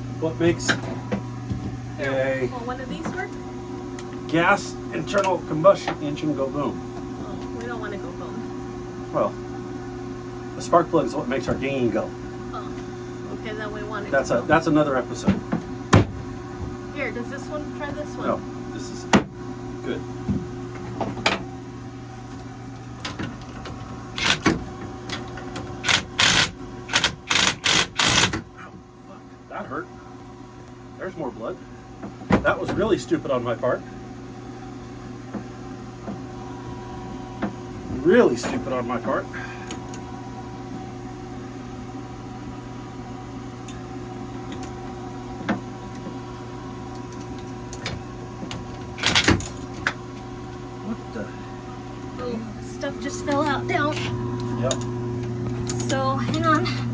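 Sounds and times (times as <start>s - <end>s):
steady low hum: 0.0s - 56.9s.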